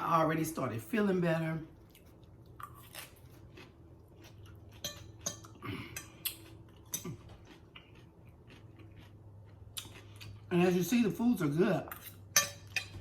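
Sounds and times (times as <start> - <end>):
chewing with clicks and smacks: 1.8 - 10.5
cutlery clinking on a dish: 4.8 - 6.1, 12.0 - 13.0.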